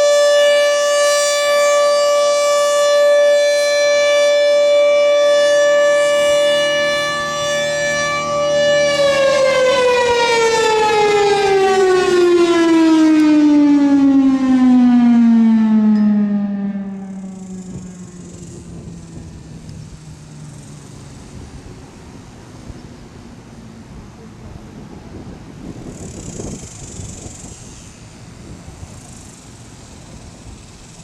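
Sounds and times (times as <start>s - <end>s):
warning siren alert tone: 0.0s - 20.9s.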